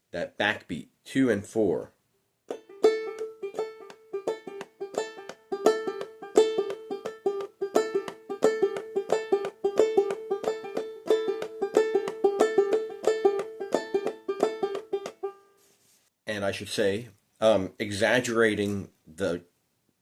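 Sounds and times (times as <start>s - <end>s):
banjolele plucked notes: 2.5s - 15.4s.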